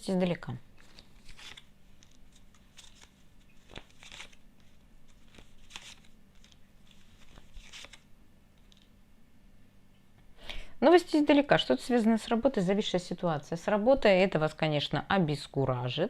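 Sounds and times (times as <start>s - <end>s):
cards rustling and clicking: 0.2s - 9.0s.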